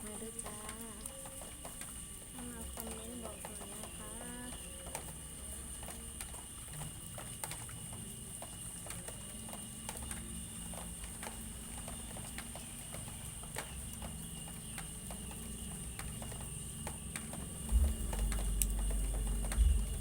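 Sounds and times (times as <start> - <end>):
light taps and clicks: 5.8 - 20.0
low steady rumble: 16.4 - 20.0.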